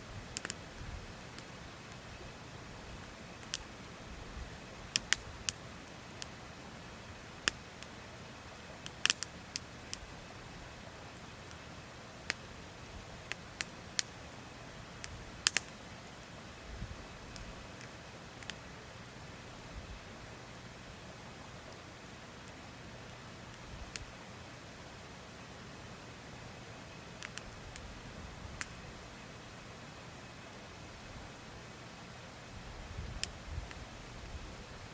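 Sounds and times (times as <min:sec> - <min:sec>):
campfire crackling: 0:00.0 - 0:34.9.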